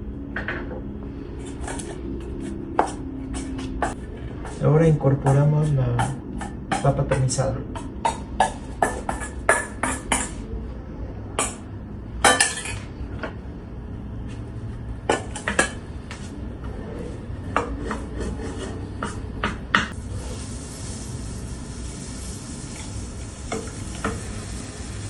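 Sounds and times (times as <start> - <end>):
spoon scraping a cooking pot: 17.4 - 19.3
sizzling hiss: 20.0 - 25.0.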